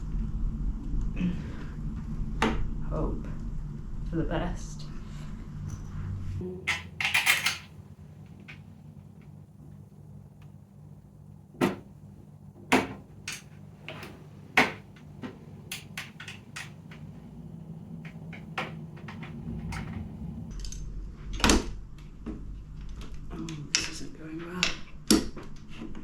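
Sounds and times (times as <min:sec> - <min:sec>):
low handling rumble: 0:00.0 - 0:25.7
metal parts clicking and knocking: 0:06.7 - 0:08.7, 0:12.7 - 0:20.8.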